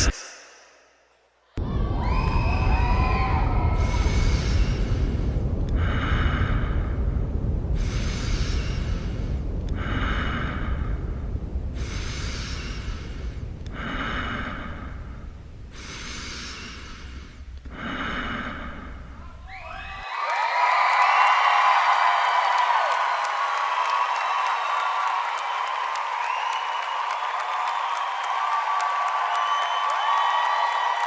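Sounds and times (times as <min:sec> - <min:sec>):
deep noise rumble: 0:01.6 - 0:20.1
rushing hiss: 0:02.8 - 0:19.5.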